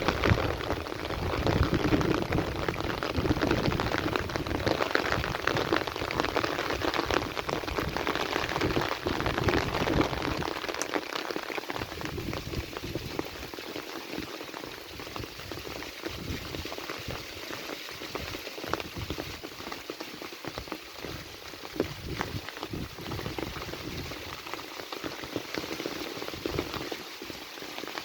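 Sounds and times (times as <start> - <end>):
heavy rain falling: 0.0 - 28.0.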